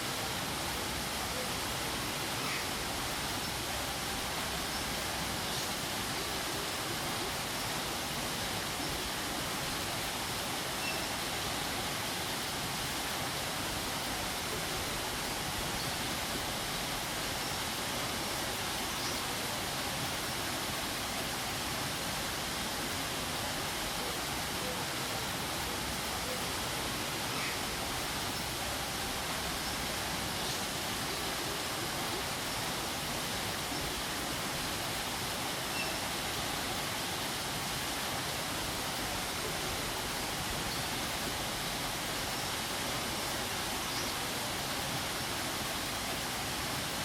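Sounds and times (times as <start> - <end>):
waterfall rushing: 0.0 - 47.0.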